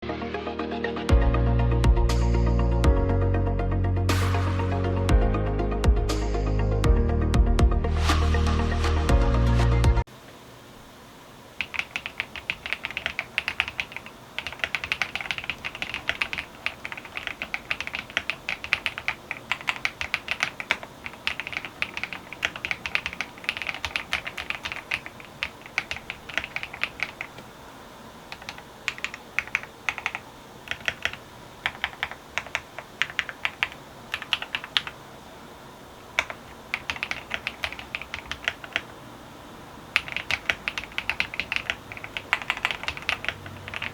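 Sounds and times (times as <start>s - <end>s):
mechanical keyboard typing: 11.6s - 27.5s, 28.3s - 35.0s, 36.2s - 38.9s, 39.9s - 43.9s.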